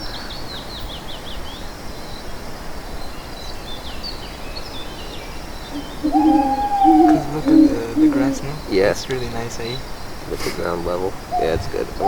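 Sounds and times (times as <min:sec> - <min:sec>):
outdoor background noise: 0:00.0 - 0:12.0
small bird chirping: 0:00.0 - 0:12.0.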